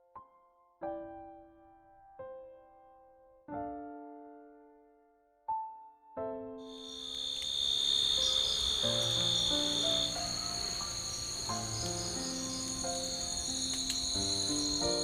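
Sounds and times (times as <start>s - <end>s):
soft piano music: 0.0s - 15.0s
crickets and night insects chirring: 6.7s - 15.0s.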